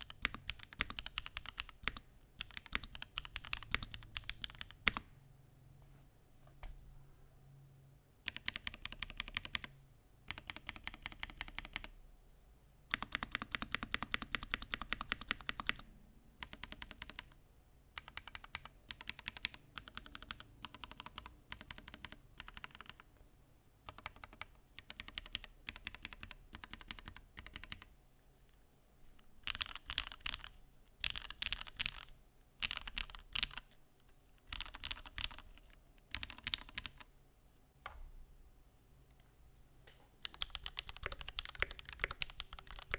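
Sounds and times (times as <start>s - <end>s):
mechanical keyboard typing: 0.0s - 5.1s, 8.3s - 9.7s, 10.3s - 11.9s, 12.9s - 15.8s, 16.4s - 17.4s, 18.0s - 23.1s, 23.9s - 27.9s, 29.4s - 33.8s, 34.4s - 37.1s, 40.2s - 42.9s.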